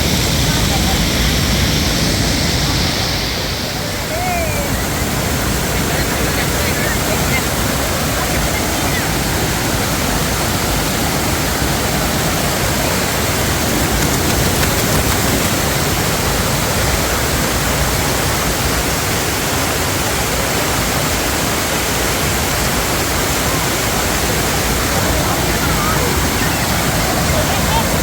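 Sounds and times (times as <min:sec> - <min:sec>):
water rushing over rocks: 0:00.0 - 0:28.0.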